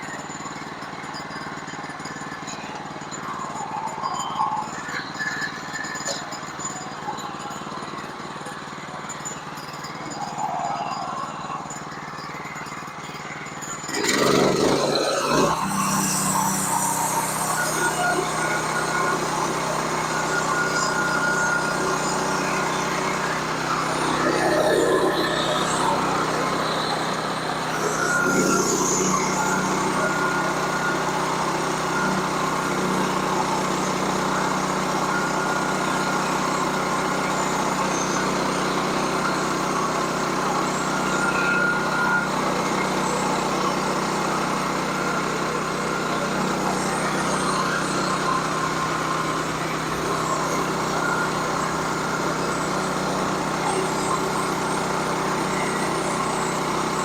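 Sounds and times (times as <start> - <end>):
sawmill engine running: 0.0 - 57.0
thin whine: 0.0 - 57.0
saw cutting through log: 13.6 - 57.0.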